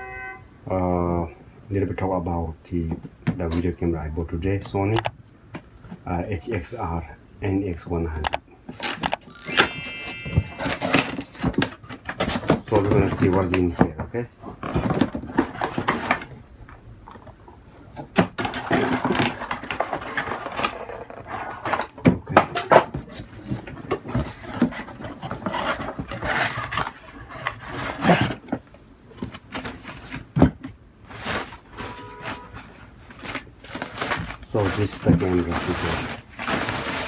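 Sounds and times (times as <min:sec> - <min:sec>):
box packaging being opened: 0:08.8 - 0:13.8, 0:18.2 - 0:22.0, 0:31.1 - 0:37.0.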